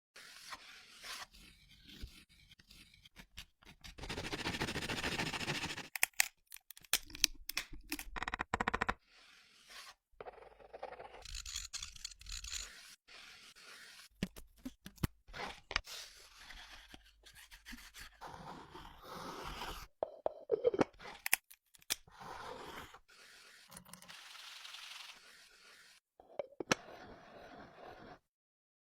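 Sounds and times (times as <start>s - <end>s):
scraping and cutting wood: 0.2s - 6.7s, 11.2s - 19.9s.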